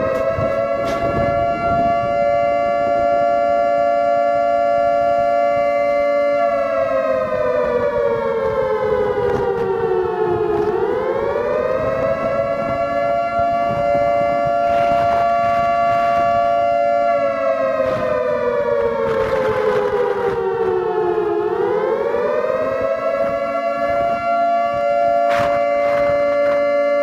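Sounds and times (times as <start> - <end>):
civil defense siren wailing: 0.0 - 27.0.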